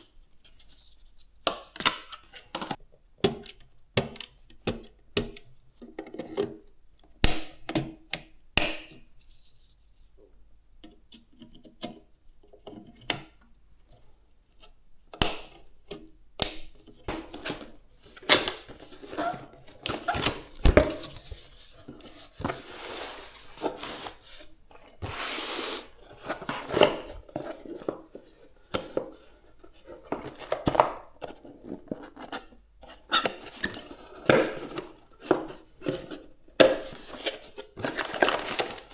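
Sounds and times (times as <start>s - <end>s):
packaging rubbing and rustling: 17.1s - 29.0s, 36.7s - 38.9s.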